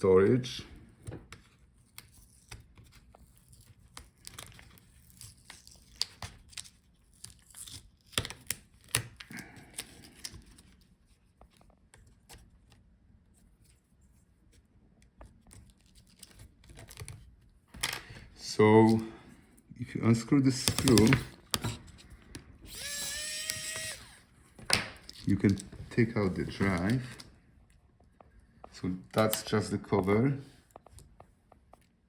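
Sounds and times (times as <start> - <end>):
thin film crinkling and tearing: 3.0 - 10.7, 24.8 - 27.4.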